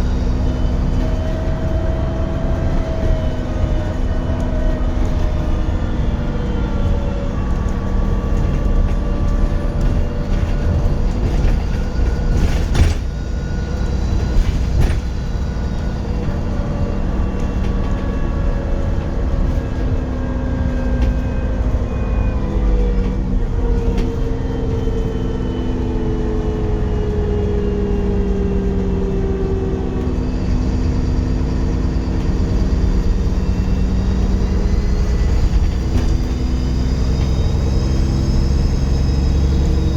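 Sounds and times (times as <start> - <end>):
bus engine and gearbox: 0.0 - 39.9
turbocharger whistle: 30.2 - 39.9.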